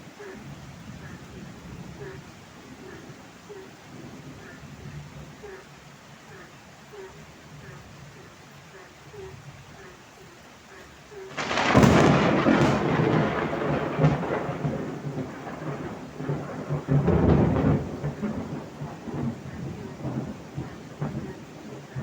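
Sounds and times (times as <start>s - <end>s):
heavy rain: 0.0s - 22.0s
thunder rumbling: 11.3s - 22.0s.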